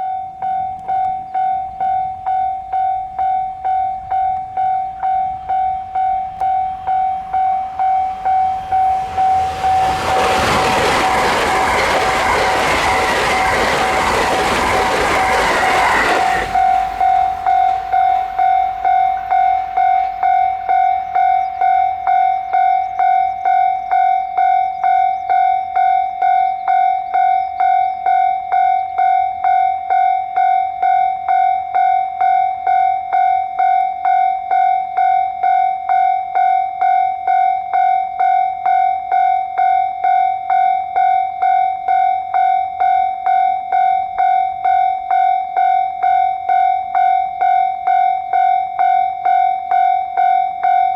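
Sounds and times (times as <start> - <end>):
level crossing bell ringing: 0.0 - 24.6.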